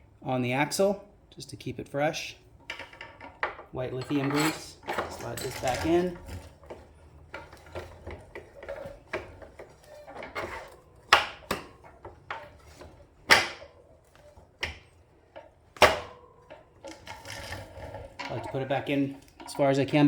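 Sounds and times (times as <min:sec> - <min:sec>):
axle scraping clicks: 0:16.5 - 0:19.9.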